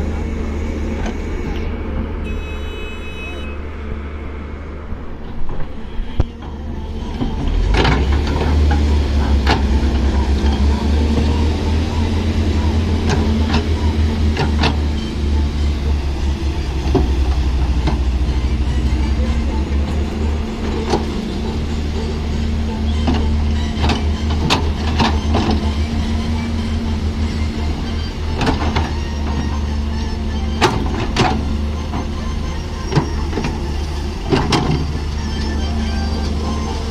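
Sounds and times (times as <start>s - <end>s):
excavator diesel engine running: 0.0s - 36.9s
bucket and linkage clanks: 6.4s - 11.4s, 12.2s - 15.2s, 19.0s - 26.0s, 27.7s - 36.9s.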